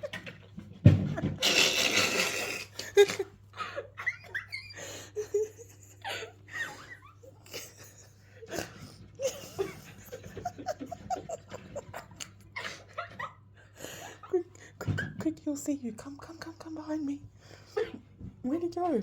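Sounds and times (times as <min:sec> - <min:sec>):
stifled giggling: 0:01.0 - 0:15.2.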